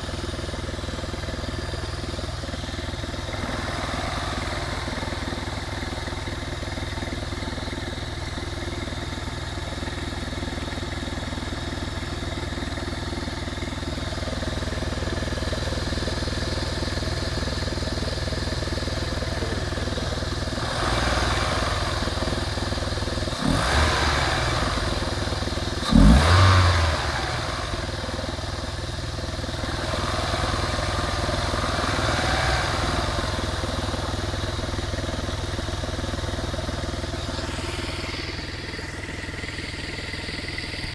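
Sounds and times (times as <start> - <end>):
petrol engine running: 0.0 - 40.9
strange noise inside engine: 0.0 - 40.9
engine revving: 3.2 - 7.1, 18.9 - 39.0.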